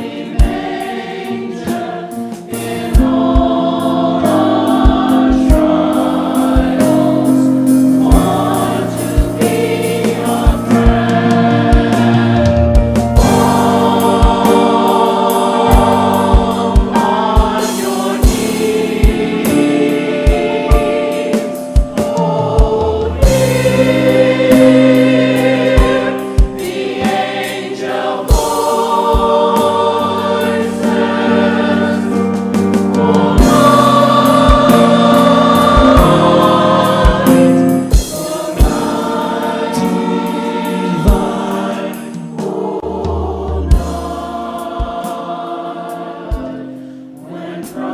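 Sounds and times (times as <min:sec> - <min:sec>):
church choir singing: 0:00.0 - 0:47.9
instrumental accompaniment: 0:00.0 - 0:47.9
regular low beat: 0:02.5 - 0:27.3, 0:28.3 - 0:42.9.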